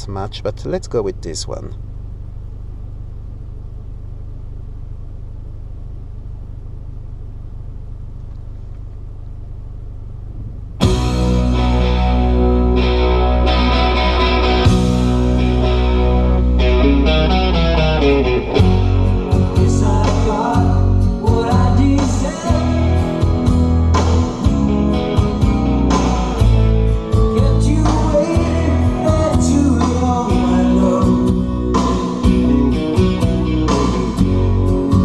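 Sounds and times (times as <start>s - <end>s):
pulsing bass notes: 10.1s - 35.0s
song on car stereo: 10.8s - 35.0s.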